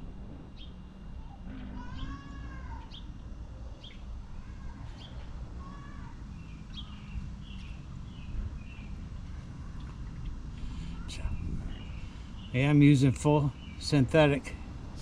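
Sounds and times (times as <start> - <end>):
steady low rumble: 6.2 - 15.0.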